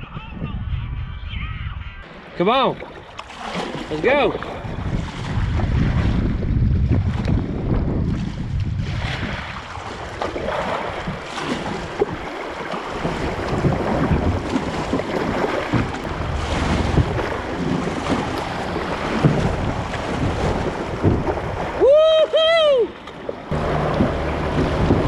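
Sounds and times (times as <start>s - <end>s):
wind buffeting microphone: 0.0s - 25.0s
river water rushing and splashing: 9.3s - 25.0s.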